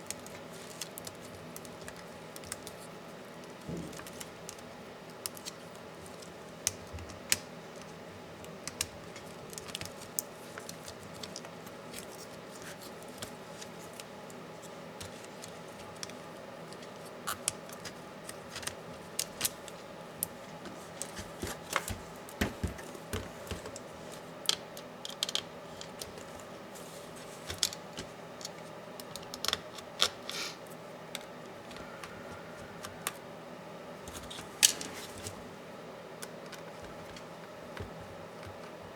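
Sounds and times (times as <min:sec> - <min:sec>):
plastic laptop parts handled: 0:00.0 - 0:07.9, 0:08.5 - 0:26.5
faint steady hum: 0:00.0 - 0:38.9.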